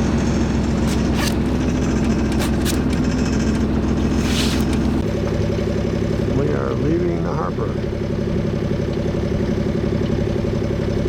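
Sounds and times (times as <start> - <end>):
boat engine running: 0.0 - 11.0.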